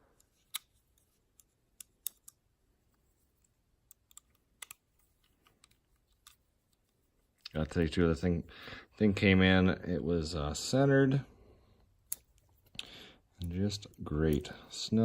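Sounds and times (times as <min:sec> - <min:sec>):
faint metal clicks and taps: 0:00.1 - 0:02.4, 0:03.4 - 0:07.6.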